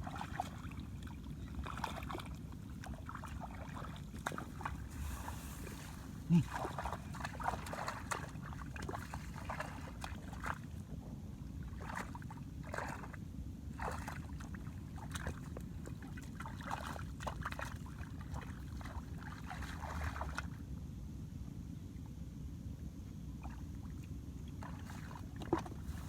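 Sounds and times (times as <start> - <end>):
shallow water splashing: 0.0 - 10.8, 11.6 - 20.5, 24.6 - 26.0
steady low rumble: 1.0 - 12.4.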